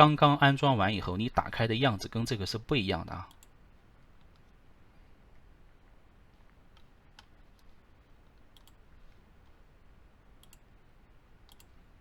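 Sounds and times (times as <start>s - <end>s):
low room hum: 0.0s - 12.0s
computer mouse clicks: 3.3s - 3.6s, 6.7s - 9.6s, 10.4s - 10.7s, 11.4s - 11.8s.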